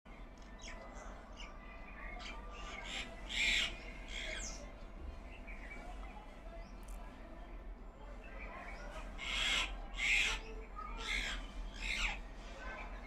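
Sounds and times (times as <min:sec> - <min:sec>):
birds calling: 0:00.6 - 0:05.8, 0:08.4 - 0:12.3
loud harsh bird squawk: 0:02.3 - 0:04.6, 0:09.2 - 0:12.2.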